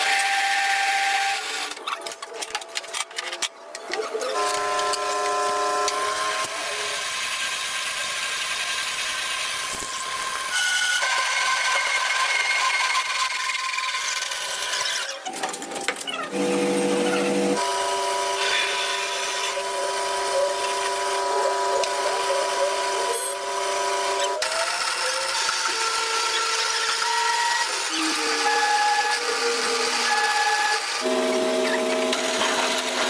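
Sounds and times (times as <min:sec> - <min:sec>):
machine whine: 0:16.3 - 0:33.0.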